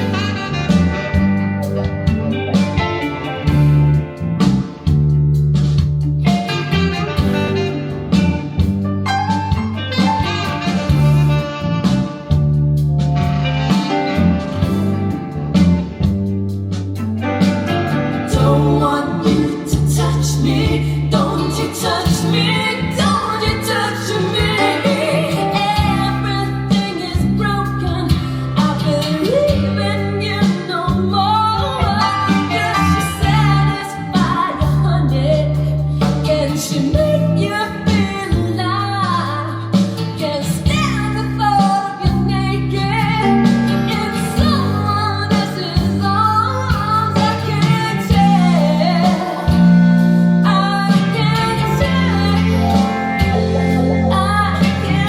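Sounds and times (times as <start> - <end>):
pop song over loudspeakers: 0.0 - 5.0, 17.4 - 55.0.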